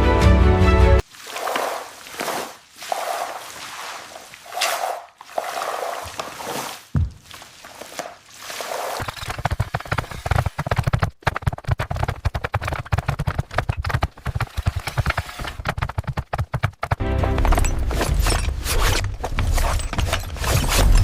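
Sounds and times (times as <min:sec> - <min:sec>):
low-pitched music: 0:00.0 - 0:01.0, 0:17.0 - 0:18.0
rapid clattering knocks: 0:09.0 - 0:17.0.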